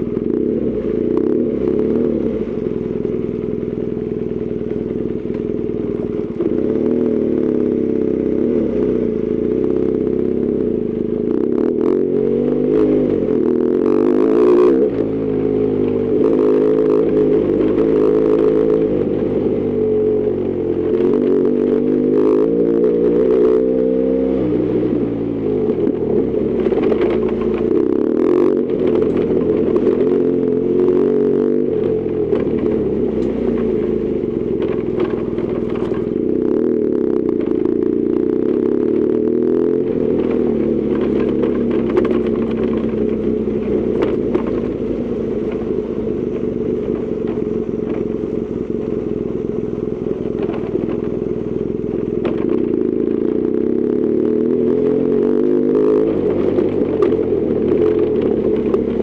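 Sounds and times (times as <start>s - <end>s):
motorcycle engine running: 0.0s - 59.0s
gravel clicks and clatter: 25.7s - 59.0s.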